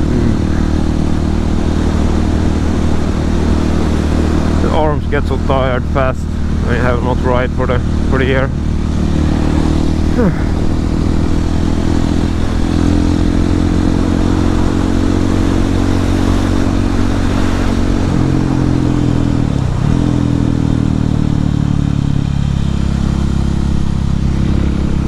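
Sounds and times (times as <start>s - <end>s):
motorcycle engine running: 0.0s - 25.0s
wind noise: 22.5s - 25.0s.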